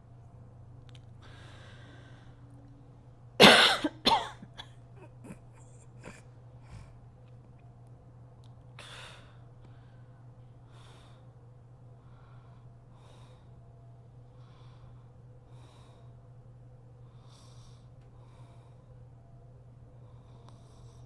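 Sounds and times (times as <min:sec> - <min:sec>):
steady low hum: 0:00.0 - 0:21.0
woman breathing heavily in sleep: 0:01.2 - 0:02.6, 0:05.6 - 0:07.1, 0:08.8 - 0:16.4, 0:17.0 - 0:19.3, 0:19.9 - 0:21.0.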